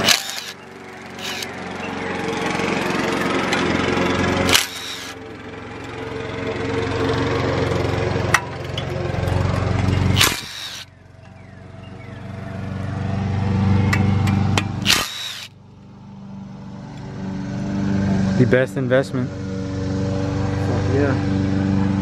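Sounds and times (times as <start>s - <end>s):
power tool motor running: 0.0s - 8.2s, 9.1s - 11.7s, 14.7s - 15.6s.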